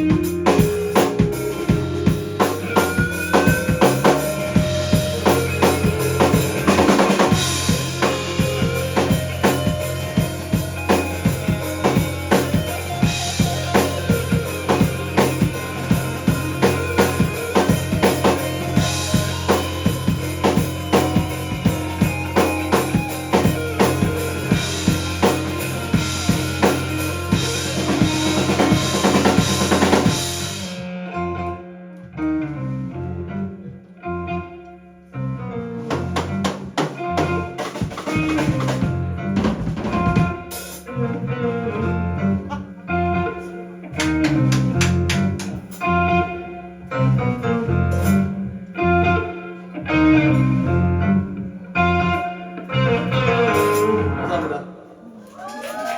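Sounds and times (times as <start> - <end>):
drum kit beat: 0.0 - 30.8, 35.9 - 40.9, 44.0 - 46.0
rock band playing: 0.0 - 54.7.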